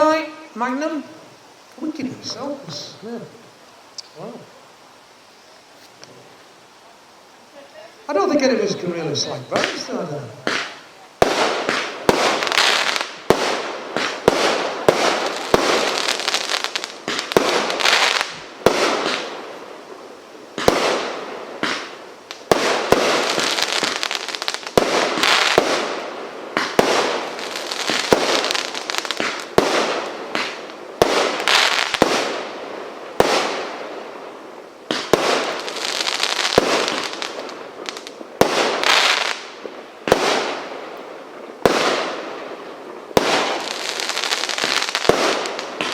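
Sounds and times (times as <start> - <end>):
crackling hiss of fireworks: 0.0 - 45.9
firework shots and bangs: 9.5 - 19.4, 20.6 - 34.1, 34.8 - 40.8, 41.6 - 45.9.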